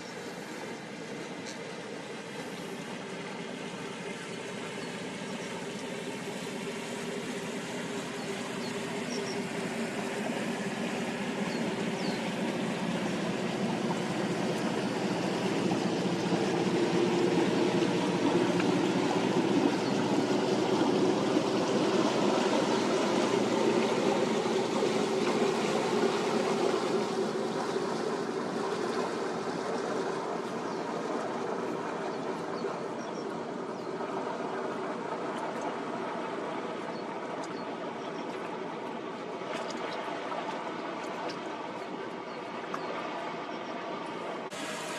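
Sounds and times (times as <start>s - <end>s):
boat engine passing: 0.0s - 44.9s
water lapping: 0.0s - 44.9s.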